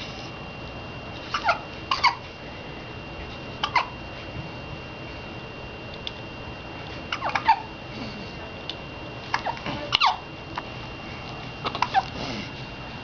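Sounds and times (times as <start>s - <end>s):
baby squeaking: 7.2s - 7.7s.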